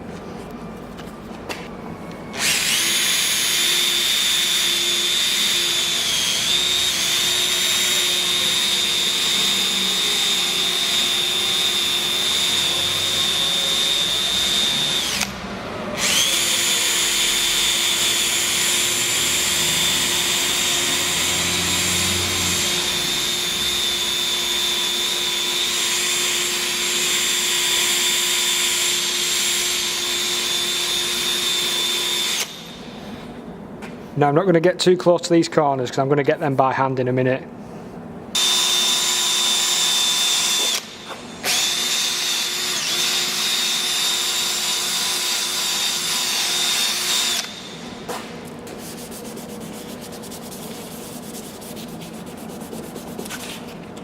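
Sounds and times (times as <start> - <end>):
electric drill sanding plastic: 2.4 - 15.3.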